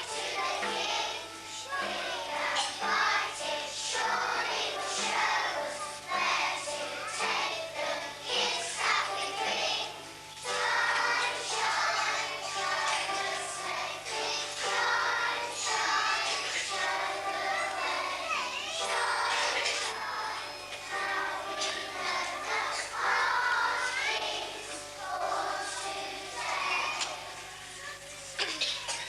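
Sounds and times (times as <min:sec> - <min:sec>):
children singing with music: 0:00.0 - 0:29.0.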